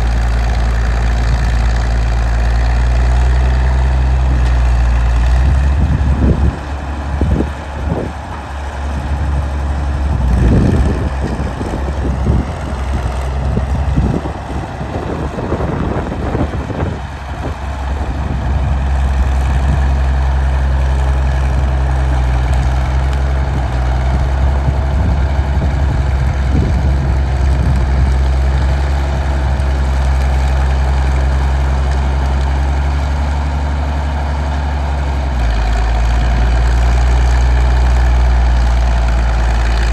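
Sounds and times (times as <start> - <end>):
bulldozer diesel engine drone: 0.0 - 39.9
engine knocks and crackles: 0.0 - 39.9.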